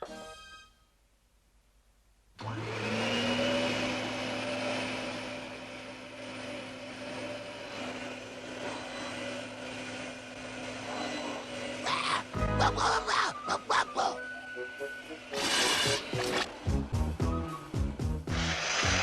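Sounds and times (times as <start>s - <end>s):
cartoon motor whirring: 10.0s - 16.6s, 17.4s - 19.0s
hiss: 18.3s - 19.0s.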